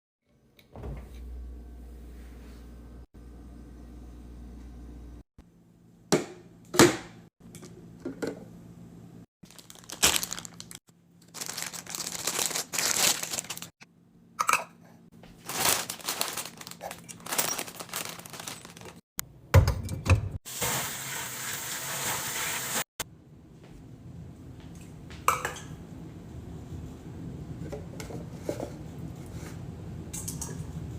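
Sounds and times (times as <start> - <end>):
plastic packaging crinkling: 9.4 - 13.8, 15.4 - 19.0.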